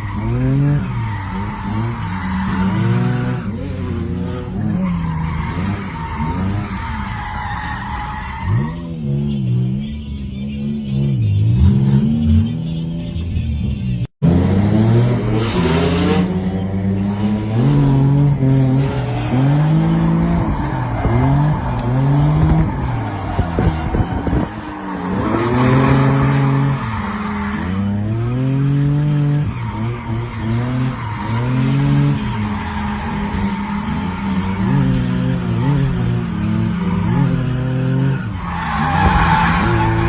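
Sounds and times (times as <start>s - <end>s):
car engine revving: 14.2s - 40.0s.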